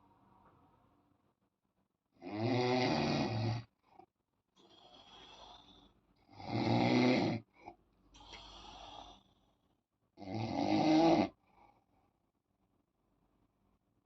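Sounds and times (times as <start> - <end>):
loud rasping snores: 2.2 - 3.7, 4.7 - 7.5, 10.2 - 11.4
soft breath: 4.6 - 6.2, 7.6 - 9.8.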